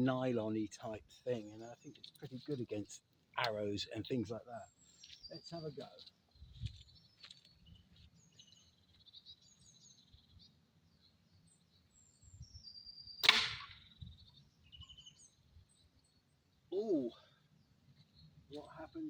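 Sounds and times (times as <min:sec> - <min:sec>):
arrow cracking through hard hat: 0:13.2 - 0:13.8.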